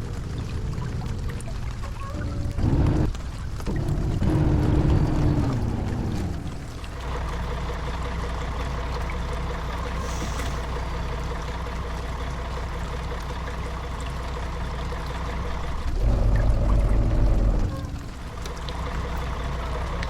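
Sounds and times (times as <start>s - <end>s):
road noise: 0.0s - 20.0s
coach engine hum: 1.8s - 20.0s
rain hiss: 9.9s - 19.9s.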